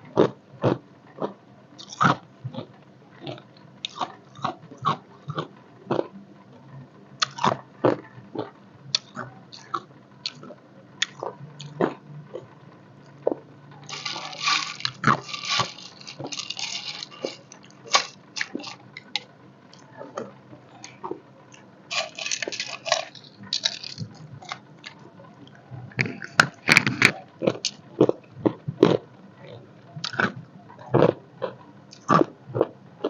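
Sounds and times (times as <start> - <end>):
ice cubes being chewed: 13.8 - 19.2, 21.9 - 25.0.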